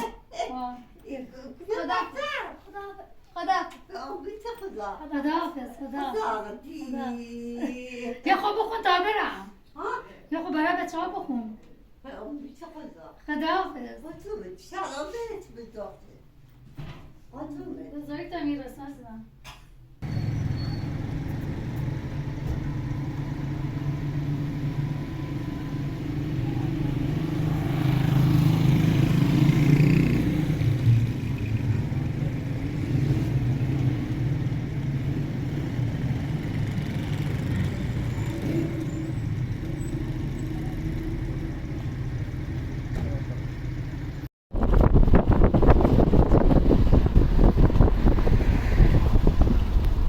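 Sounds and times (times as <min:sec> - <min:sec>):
car engine: 0:20.0 - 0:44.3
road rumble: 0:20.0 - 0:50.0.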